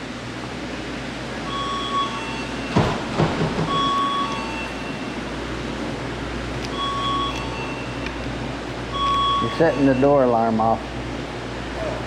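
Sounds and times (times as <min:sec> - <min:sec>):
thump: 0:02.8 - 0:03.8.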